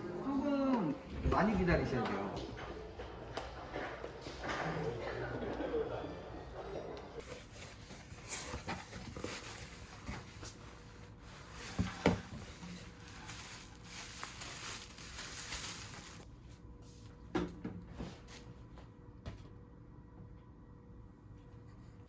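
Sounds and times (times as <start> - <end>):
rustling and clicks of objects: 7.2 - 16.2.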